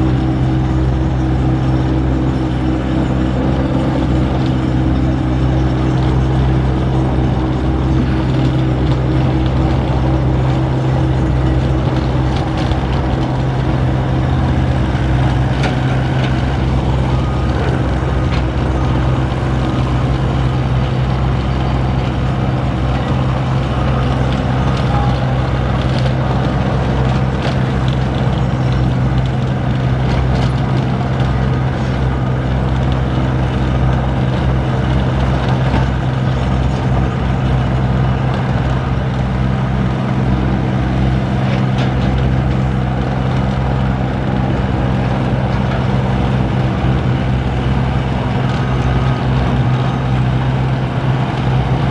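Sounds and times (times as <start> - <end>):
diesel engine running: 0.0 - 51.9.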